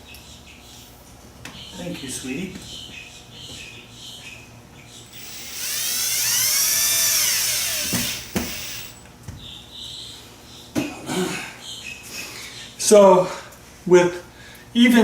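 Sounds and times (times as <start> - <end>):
drill clicks: 5.1 - 9.0
power drill motor whine: 5.1 - 9.0.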